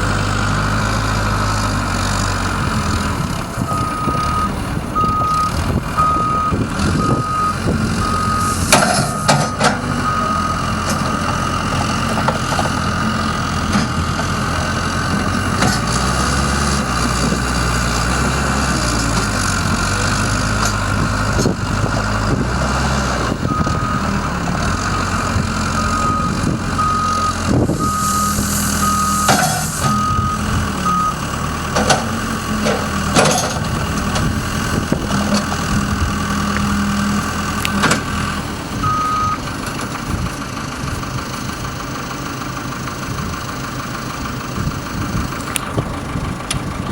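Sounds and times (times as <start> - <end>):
diesel engine running: 0.0 - 46.9
reversing alarm beeps: 3.7 - 11.4, 23.5 - 24.1, 25.8 - 31.2, 38.8 - 39.4.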